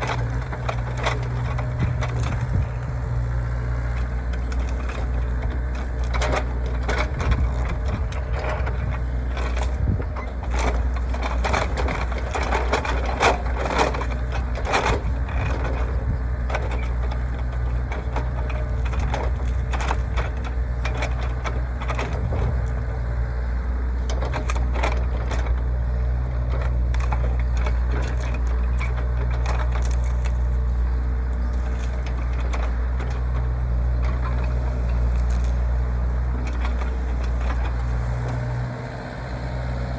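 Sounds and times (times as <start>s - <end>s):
excavator diesel engine running: 0.0s - 39.9s
wood splintering cracks: 26.7s - 33.6s, 34.2s - 35.9s.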